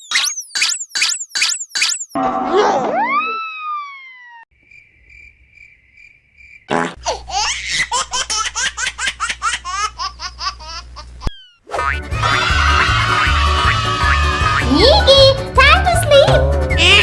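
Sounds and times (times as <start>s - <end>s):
chirping tone: 0.0s - 2.2s, 11.3s - 11.7s
falling whistle glide: 0.0s - 2.2s.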